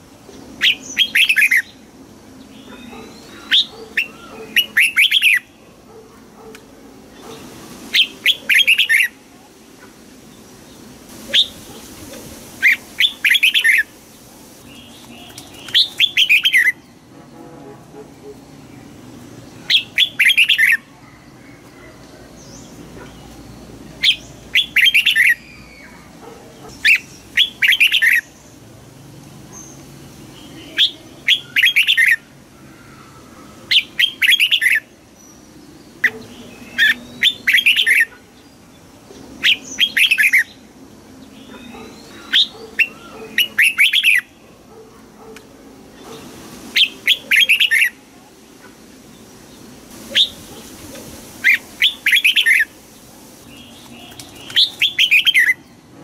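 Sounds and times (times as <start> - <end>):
bird chirping song: 0.3 - 6.5, 7.1 - 9.2, 14.6 - 17.1, 18.2 - 28.6, 29.5 - 45.4, 46.0 - 48.0, 51.4 - 52.8, 53.5 - 55.9.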